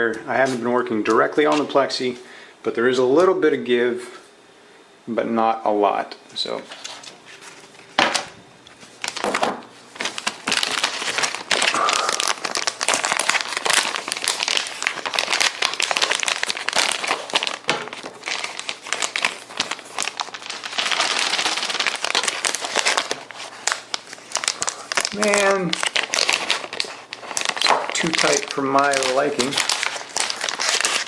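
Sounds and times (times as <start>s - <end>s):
plastic packaging crinkling: 6.4s - 31.0s.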